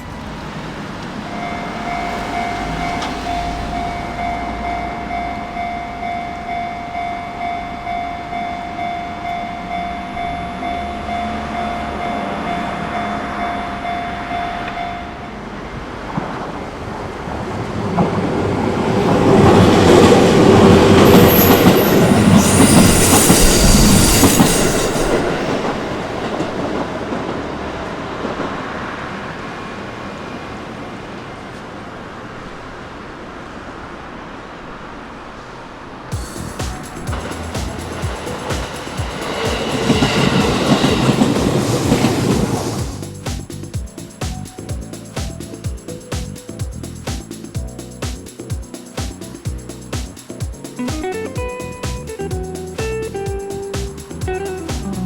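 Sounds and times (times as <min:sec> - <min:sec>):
high wheel squeal: 0:00.0 - 0:15.5, 0:18.4 - 0:26.8, 0:36.1 - 0:43.7
level crossing warning bell ringing: 0:00.0 - 0:15.7, 0:19.3 - 0:26.7, 0:36.2 - 0:43.2
train wheel and rail noise: 0:00.0 - 0:55.0.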